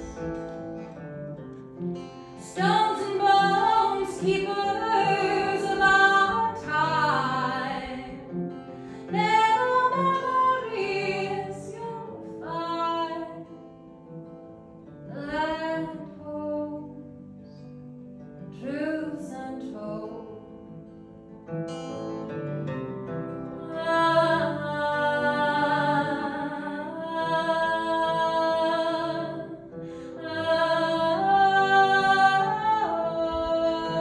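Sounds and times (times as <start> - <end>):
acoustic guitar chords: 0.0 - 34.0
woman singing: 2.4 - 8.4, 9.0 - 13.6, 15.1 - 17.1, 18.6 - 20.8, 23.6 - 34.0.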